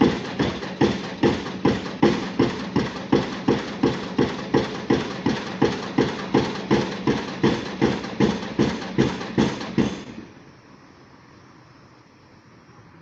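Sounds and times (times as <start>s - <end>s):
pile driver hammer blows: 0.0s - 10.3s
rig engine running: 0.0s - 10.6s.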